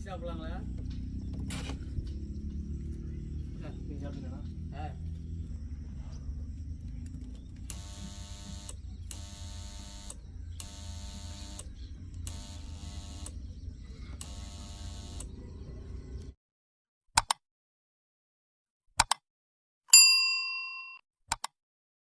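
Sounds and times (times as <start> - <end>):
steady low hum: 0.0 - 16.4
pulsing machine buzz: 7.1 - 16.3.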